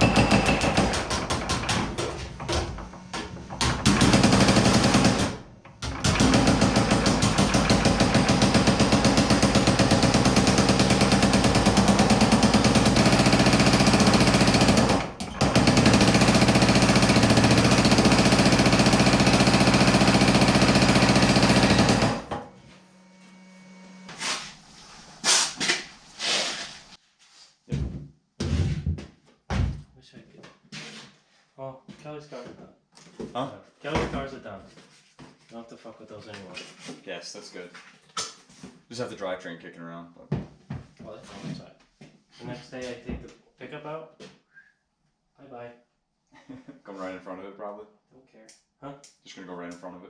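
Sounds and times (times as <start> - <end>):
scattered knocks: 0.0 - 9.0
power hammer pounding sheet metal: 0.0 - 22.3.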